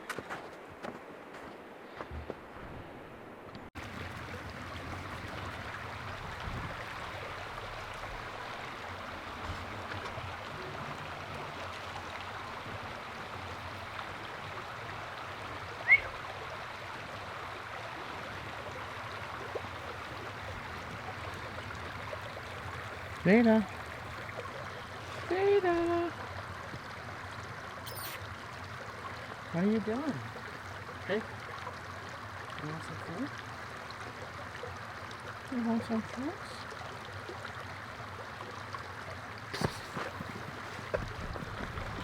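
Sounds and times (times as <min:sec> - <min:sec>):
stream of running water: 0:00.0 - 0:42.0
short sharp chirp: 0:27.8 - 0:28.3.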